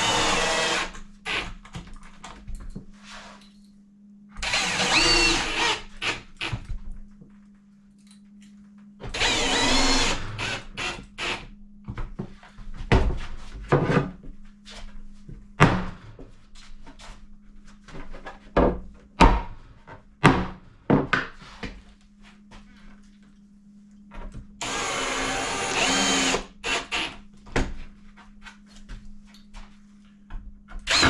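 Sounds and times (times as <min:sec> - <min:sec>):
cordless drill driving screws: 0:00.0 - 0:01.4, 0:04.4 - 0:06.2, 0:09.2 - 0:11.4, 0:24.6 - 0:27.1.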